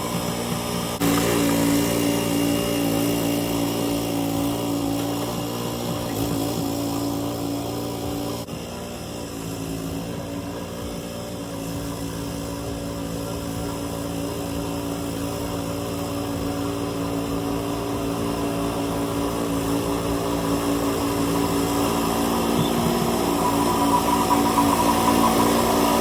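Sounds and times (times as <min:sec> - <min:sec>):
engine running steadily: 0:00.0 - 0:26.0.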